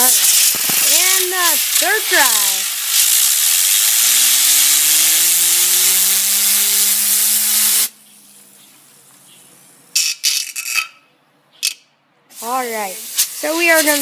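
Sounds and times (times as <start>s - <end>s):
compressed air hissing: 0.0s - 8.0s, 12.3s - 14.0s.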